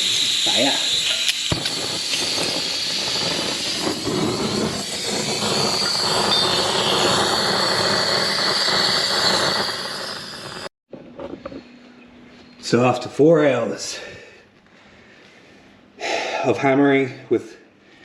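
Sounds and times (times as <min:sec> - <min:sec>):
gas torch flame hissing: 0:00.0 - 0:10.7.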